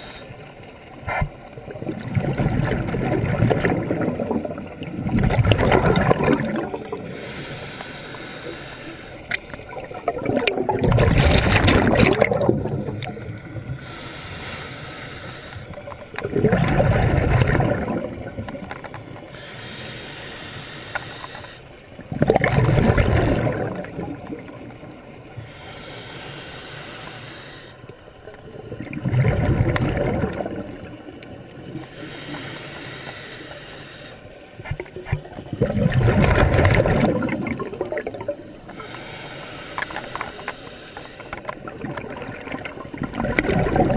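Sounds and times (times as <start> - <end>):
diver exhaling bubbles underwater: 1.1 - 7.2, 9.6 - 13.8, 16.1 - 18.8, 22.0 - 24.9, 28.5 - 31.9, 34.6 - 38.8, 41.4 - 43.9
water wash: 34.6 - 38.8, 41.4 - 43.9.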